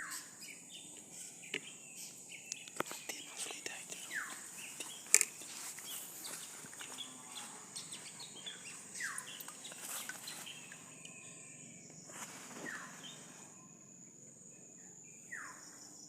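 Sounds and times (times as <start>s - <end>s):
insects buzzing: 0.0s - 16.0s
faint clicks and rustles: 2.5s - 10.8s.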